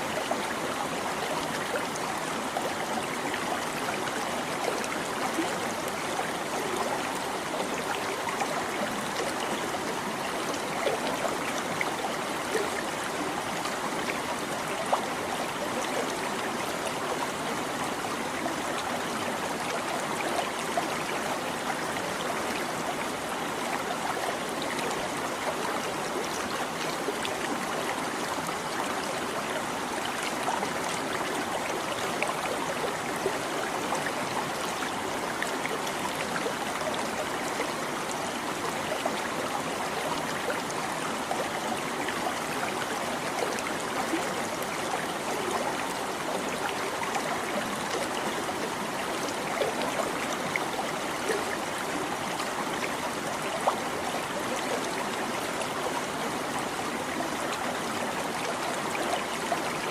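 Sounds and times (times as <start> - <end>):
small stream babbling: 0.0 - 59.9.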